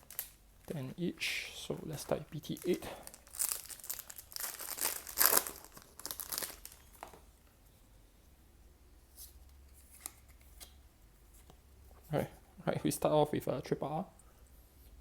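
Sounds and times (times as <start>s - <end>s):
foil wrapper tearing and crinkling: 0.0s - 0.4s, 2.6s - 7.1s.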